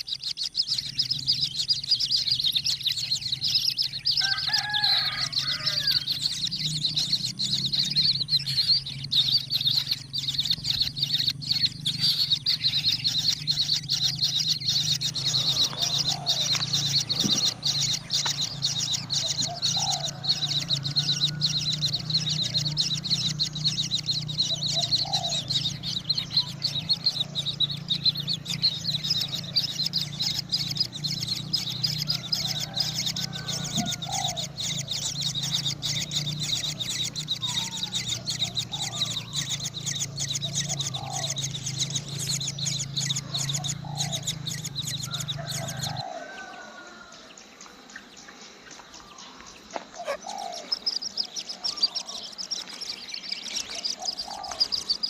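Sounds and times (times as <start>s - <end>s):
short rising bird chirps: 0.0s - 47.3s, 49.1s - 55.0s.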